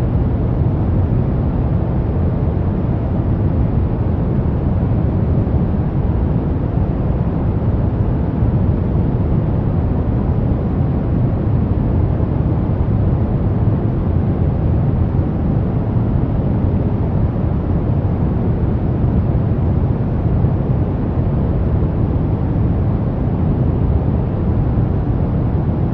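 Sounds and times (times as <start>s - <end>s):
low rumbling noise: 0.0s - 25.9s.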